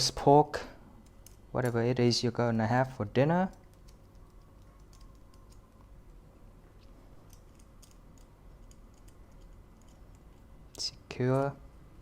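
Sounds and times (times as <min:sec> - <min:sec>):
metal spit clicks and taps: 0:07.2 - 0:11.6.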